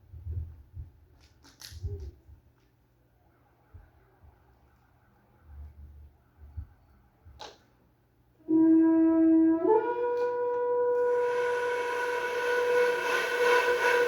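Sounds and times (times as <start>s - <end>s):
wind instrument holding notes: 8.5s - 14.0s.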